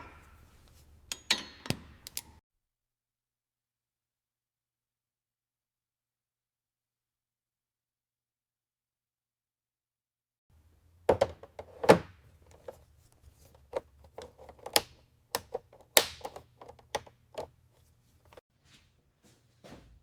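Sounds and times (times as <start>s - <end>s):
knocks clicks and clunks: 11.0s - 18.4s.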